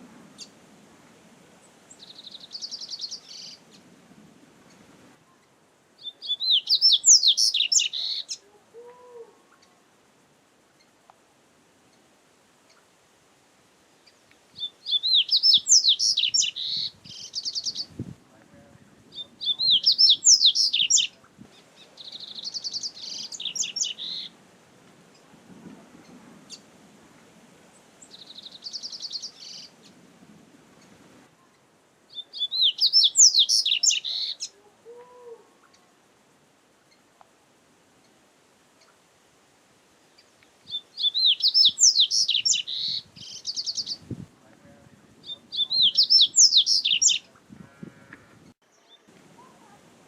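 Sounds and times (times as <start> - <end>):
bird singing whistles and trills: 6.0 - 8.4, 14.6 - 17.9, 19.1 - 21.1, 32.1 - 34.4, 40.7 - 44.0, 45.2 - 47.2.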